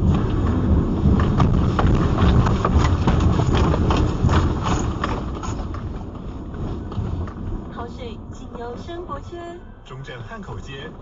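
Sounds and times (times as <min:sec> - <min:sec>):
earthquake low rumble: 0:00.0 - 0:09.6
knocking and clattering: 0:00.1 - 0:07.5.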